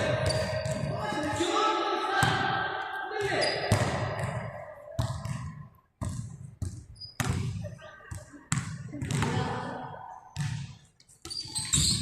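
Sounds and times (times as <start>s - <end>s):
basketball bouncing on gym floor: 0.0s - 1.4s, 3.2s - 9.6s, 10.4s - 12.0s.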